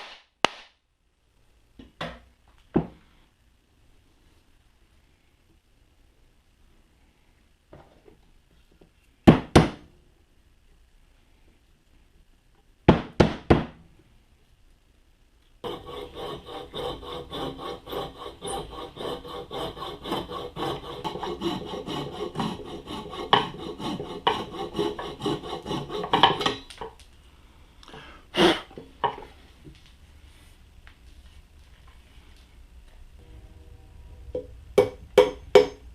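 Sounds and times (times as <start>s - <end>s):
hand saw cutting wood: 15.6s - 26.6s.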